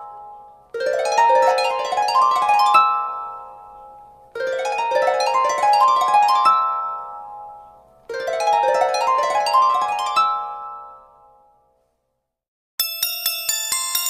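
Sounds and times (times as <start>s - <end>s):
harp-like ringtone: 12.8s - 14.0s.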